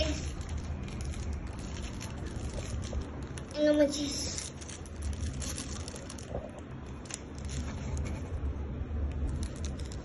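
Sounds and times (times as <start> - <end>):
package rustling: 0.0 - 8.4.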